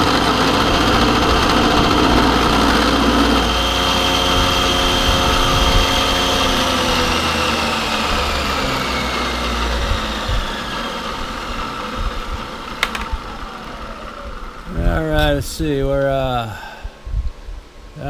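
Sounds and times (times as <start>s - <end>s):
milling machine winding down: 0.0s - 15.4s
sharp click: 12.8s - 13.2s.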